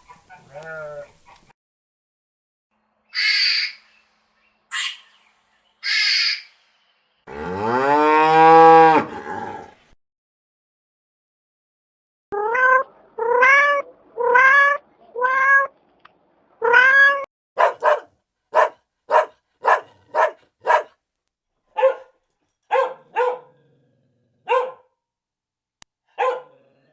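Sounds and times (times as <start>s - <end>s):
cat meowing: 12.4s - 15.7s, 16.6s - 17.3s.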